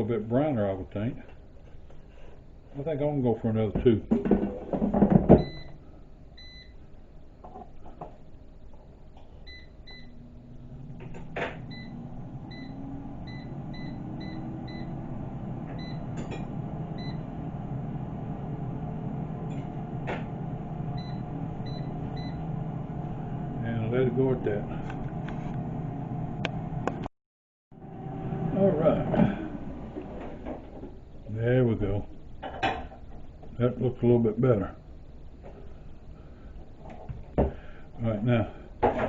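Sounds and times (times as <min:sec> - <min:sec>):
air fryer fan running: 0:00.0 - 0:27.1, 0:27.8 - 0:39.0
air fryer button beeps: 0:05.4 - 0:05.8, 0:06.4 - 0:06.8, 0:09.5 - 0:10.2, 0:11.2 - 0:15.0, 0:15.8 - 0:16.4, 0:17.0 - 0:17.3, 0:21.0 - 0:22.4.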